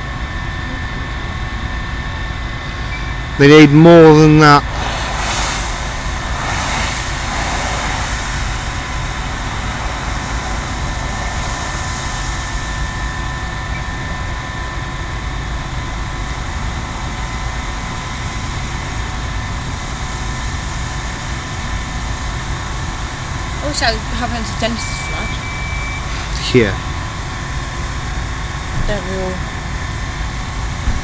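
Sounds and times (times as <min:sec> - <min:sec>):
gas burning with rushing noise: 0:00.0 - 0:31.0
faint steady tones: 0:23.2 - 0:30.8.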